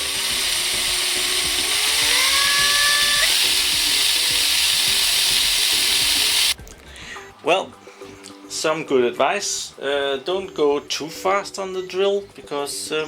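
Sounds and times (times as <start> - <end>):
electric drill running: 0.0 - 6.6.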